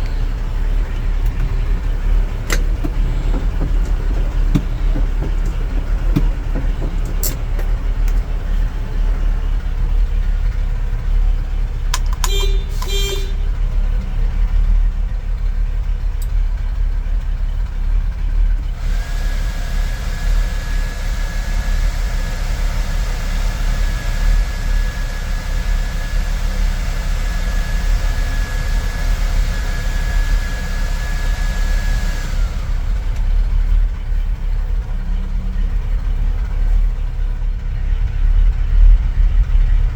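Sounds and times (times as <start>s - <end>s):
engine idling: 0.0s - 39.9s
car horn toots: 11.9s - 13.8s.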